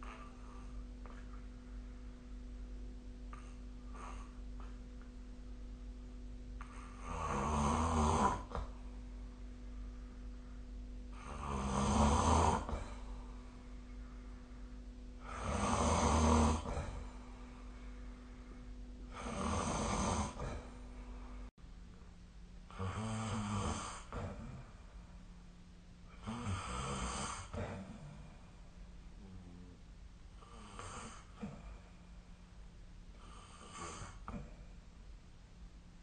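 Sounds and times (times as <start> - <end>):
person snoring: 0.0 - 1.4, 3.3 - 4.8, 6.6 - 8.8, 11.1 - 13.6, 15.2 - 17.5, 19.0 - 21.4, 22.7 - 24.8, 26.1 - 28.3, 29.2 - 29.8, 30.4 - 31.9, 33.2 - 34.6
low background hum: 0.0 - 36.0.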